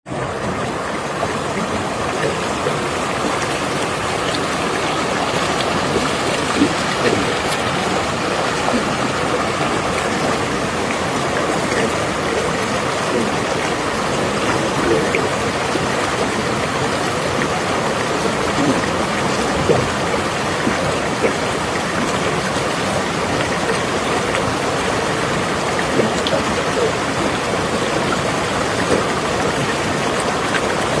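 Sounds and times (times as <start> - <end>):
stream flowing: 0.0 - 31.0.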